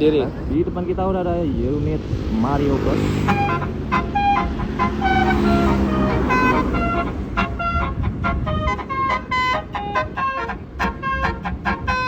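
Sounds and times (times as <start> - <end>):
bus engine running: 1.7 - 12.0
bus musical horn tune: 3.2 - 12.0.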